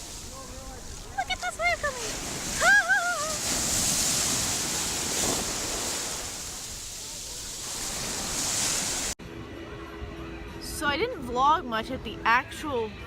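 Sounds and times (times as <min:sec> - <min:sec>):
ocean waves breaking on beach: 0:00.0 - 0:09.2.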